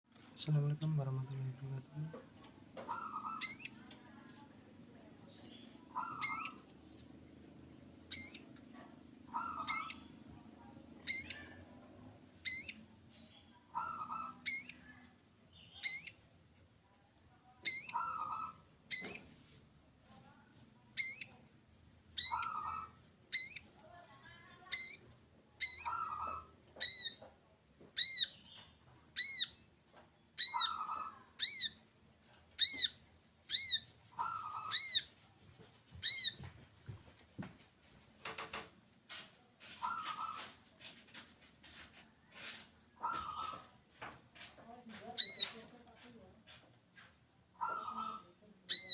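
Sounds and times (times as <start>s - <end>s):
small birds chirping: 0.4s - 16.4s, 17.5s - 19.5s, 20.2s - 21.5s, 22.1s - 35.2s, 35.9s - 36.5s, 39.8s - 40.6s, 43.0s - 43.7s, 44.7s - 46.3s, 47.6s - 48.9s.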